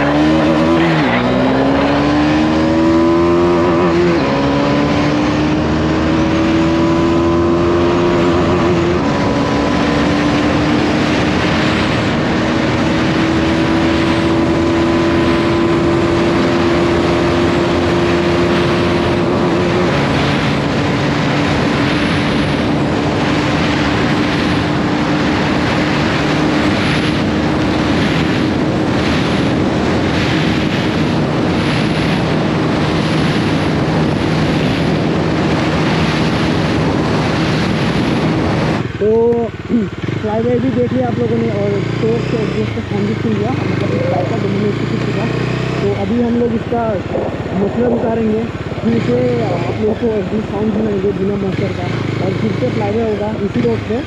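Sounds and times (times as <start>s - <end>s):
motorcycle engine shifting gears: 0.0s - 54.0s.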